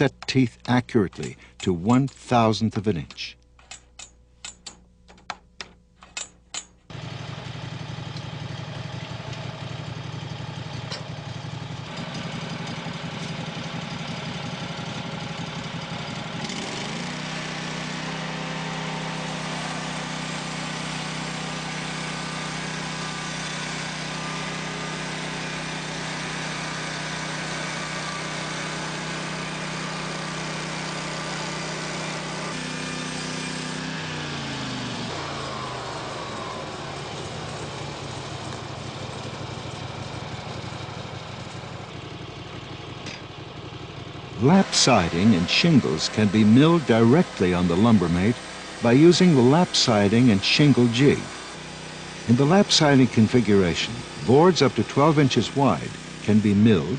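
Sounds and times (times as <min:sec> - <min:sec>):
sawmill gasoline engine running: 0:00.0 - 0:03.2, 0:06.9 - 0:56.9
sharp clicks: 0:00.2 - 0:02.3.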